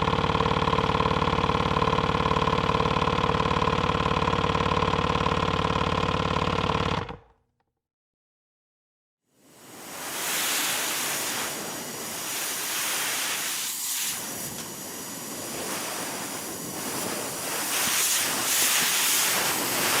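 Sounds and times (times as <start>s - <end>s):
air compressor hissing: 9.4s - 20.0s.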